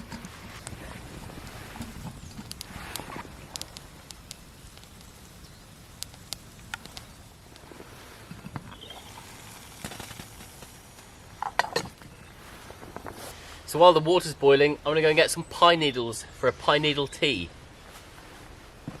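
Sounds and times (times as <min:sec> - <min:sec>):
campfire crackling and popping: 0:00.0 - 0:13.4.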